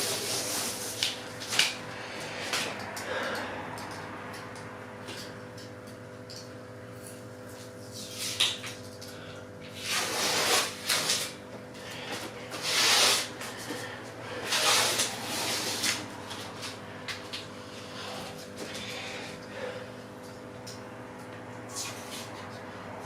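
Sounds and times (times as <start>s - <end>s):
tape peeling off glass: 8.0s - 8.8s, 9.8s - 11.4s, 12.6s - 13.4s, 14.4s - 16.0s.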